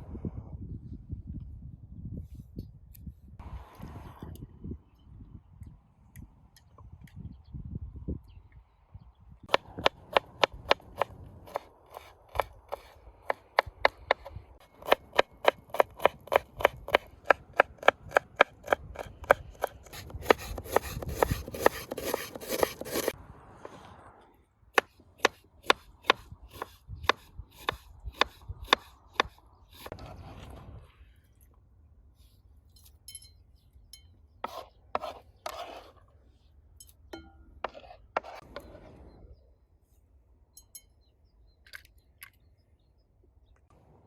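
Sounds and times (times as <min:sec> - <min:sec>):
knife chopping on cutting board: 0:09.5 - 0:23.1
knife scraping on board: 0:11.5 - 0:23.2, 0:34.4 - 0:36.0, 0:37.6 - 0:38.8.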